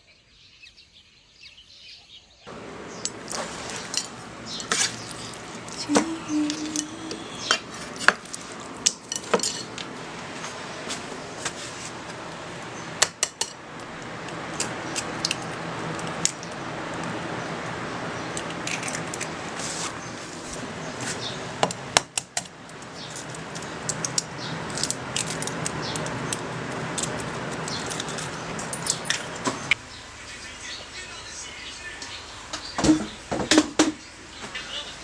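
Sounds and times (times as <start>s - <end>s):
metal utensils and dishes clinking: 2.5s - 11.6s
steady hiss: 2.5s - 21.9s.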